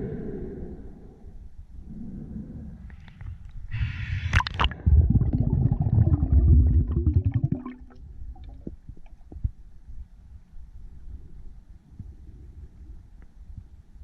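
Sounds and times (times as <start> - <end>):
low underwater bubbling rumble: 2.0 - 10.2
faint underwater ticks: 2.8 - 4.7.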